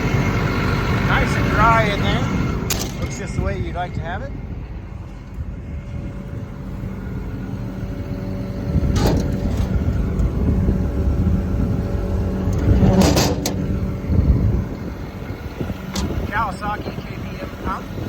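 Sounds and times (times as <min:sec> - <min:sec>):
diesel engine idling: 0:00.0 - 0:18.0
sharp metal knocks: 0:02.7 - 0:03.2.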